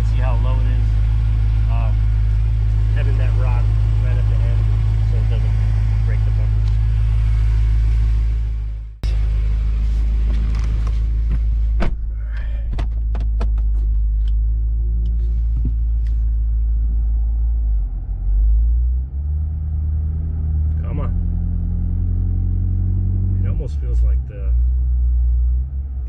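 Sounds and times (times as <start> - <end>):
car engine idling: 0.0 - 26.0
sharp clicks and knocks: 10.3 - 14.4.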